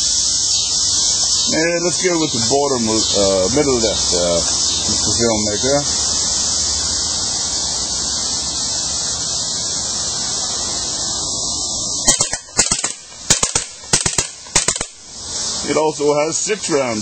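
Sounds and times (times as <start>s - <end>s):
high-pitched insect chorus: 0.0s - 17.0s
air gun shots: 12.1s - 15.4s.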